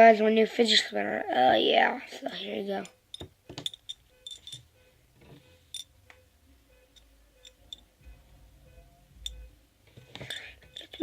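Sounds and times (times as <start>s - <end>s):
faint steady hum: 0.5s - 11.0s.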